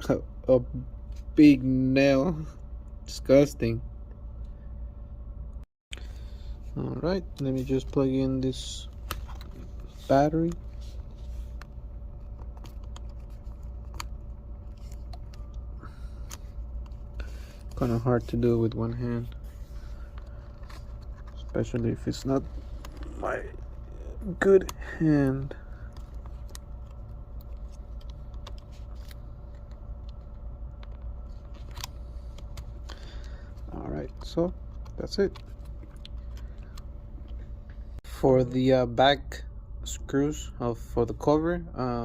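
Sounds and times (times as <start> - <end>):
steady low hum: 0.0 - 42.0
small clicks and handling noises: 8.8 - 17.9, 18.7 - 23.8, 24.4 - 37.8.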